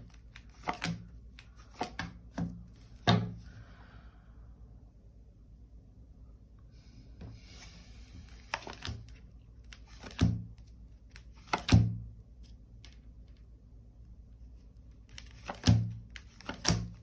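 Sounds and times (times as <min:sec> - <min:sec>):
cards rustling and sliding: 0:00.0 - 0:03.5, 0:07.4 - 0:13.4, 0:14.4 - 0:17.0.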